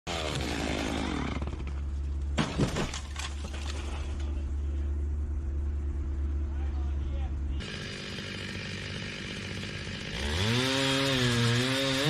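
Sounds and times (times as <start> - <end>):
chainsaw whine: 0.1 - 2.1, 7.6 - 12.0
steady low drone: 3.7 - 7.8.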